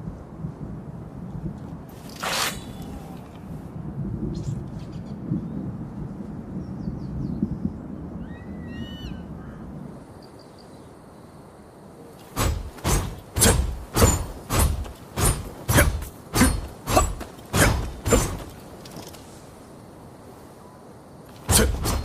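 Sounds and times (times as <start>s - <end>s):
sword swishing through air: 1.9s - 3.3s, 12.2s - 18.8s, 21.3s - 22.0s.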